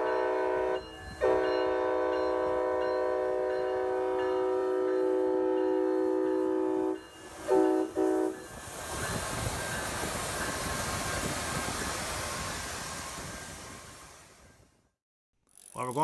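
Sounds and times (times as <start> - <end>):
locomotive air horn blasts: 0.0 - 8.4
train passing on rails: 0.0 - 14.8.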